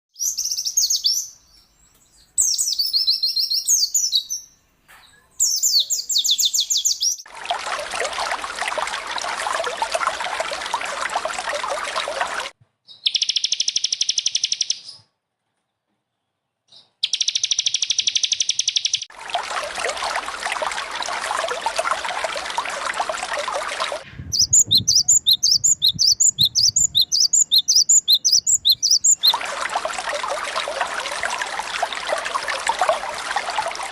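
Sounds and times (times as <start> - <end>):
songbird chirping and trills: 0.2 - 7.3, 24.1 - 29.4
running trickling water: 6.2 - 12.5, 19.1 - 33.9.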